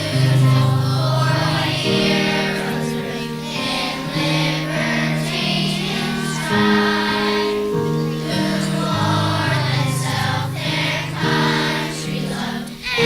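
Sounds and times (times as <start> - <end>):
children's choir singing: 0.0 - 13.0.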